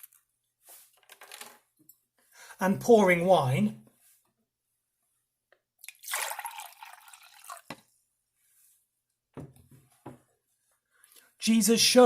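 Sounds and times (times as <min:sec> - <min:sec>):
wine pouring into a cup: 0:05.8 - 0:07.8.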